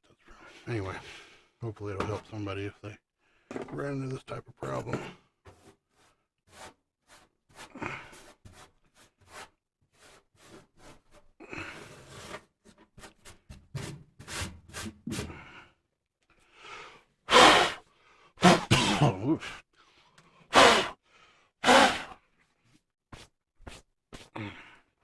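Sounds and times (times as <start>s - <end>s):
loud vocal burst: 17.3s - 17.8s, 18.4s - 19.3s, 20.5s - 20.9s, 21.6s - 22.1s.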